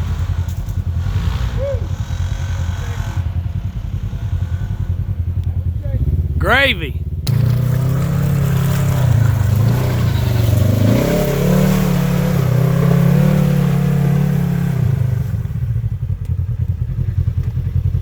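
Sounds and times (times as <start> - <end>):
utility vehicle engine revving: 7.0 - 18.0.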